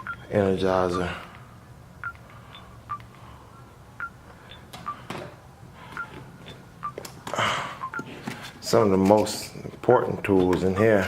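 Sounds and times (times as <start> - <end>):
short high electronic beeps: 0.0 - 0.2.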